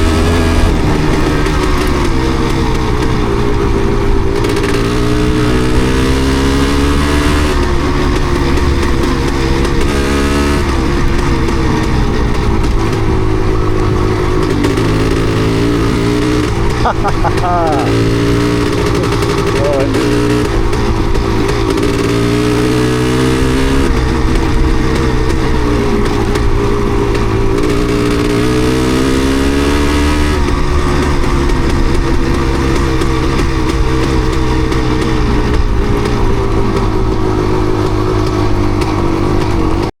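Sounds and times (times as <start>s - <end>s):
two-stroke motorbike engine revving: 0.0s - 39.9s.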